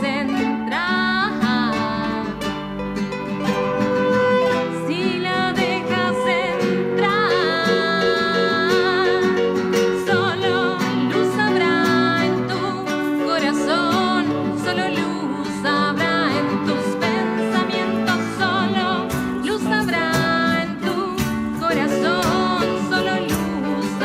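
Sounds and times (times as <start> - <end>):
person singing with vibrato: 0.0 - 2.6, 3.4 - 24.0
bass: 0.0 - 24.0
plucked guitar: 0.0 - 24.0
percussion strikes: 19.0 - 24.0.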